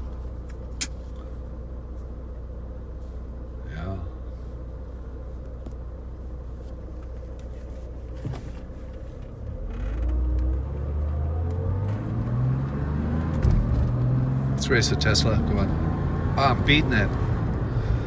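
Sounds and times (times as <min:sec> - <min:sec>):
car engine accelerating: 0:09.2 - 0:18.0.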